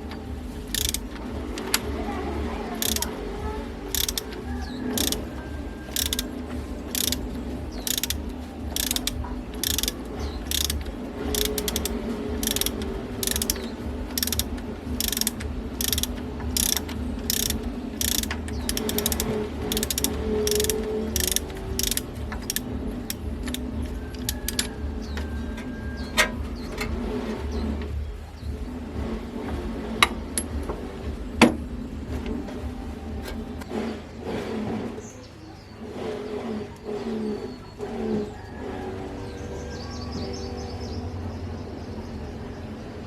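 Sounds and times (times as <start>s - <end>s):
ratchet tool clicking: 0.1s - 1.9s, 2.7s - 24.9s.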